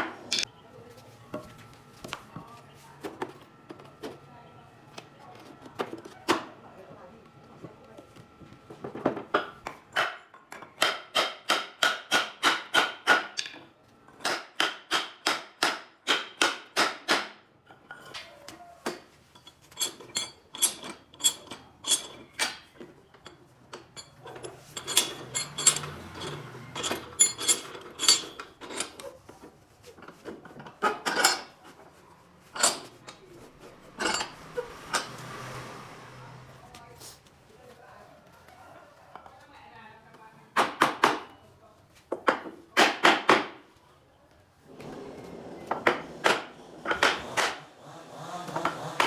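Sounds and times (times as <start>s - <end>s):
hammer striking nails: 9.4s - 13.6s, 14.2s - 17.4s, 42.3s - 43.6s, 46.2s - 47.6s.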